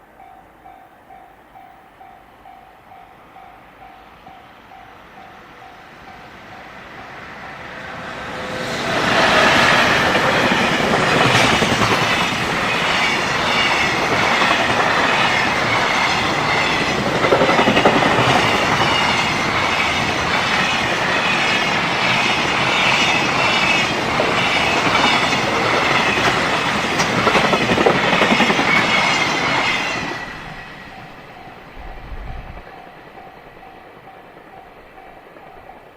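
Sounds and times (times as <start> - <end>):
train wheels clickety-clack: 7.1 - 31.1
crossing warning bell ringing: 28.4 - 31.9.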